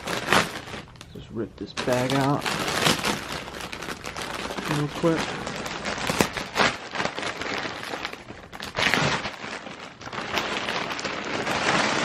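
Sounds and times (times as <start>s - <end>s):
packaging bag ripped and crinkled: 0.0s - 12.0s.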